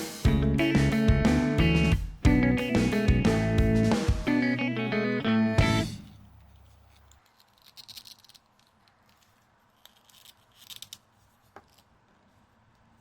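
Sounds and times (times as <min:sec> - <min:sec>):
action figure handling rustles: 0:06.4 - 0:13.0.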